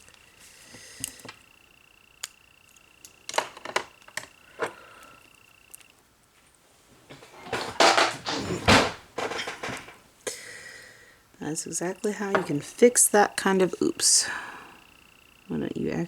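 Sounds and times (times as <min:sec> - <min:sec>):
faint high whine: 0:00.0 - 0:16.0
clatter and rustle: 0:06.3 - 0:10.0.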